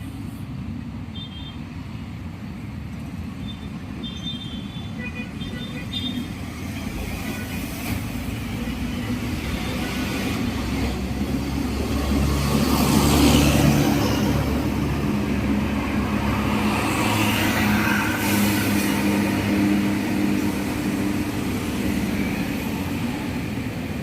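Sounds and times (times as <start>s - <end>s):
bus diesel engine driving past: 6.3s - 24.0s.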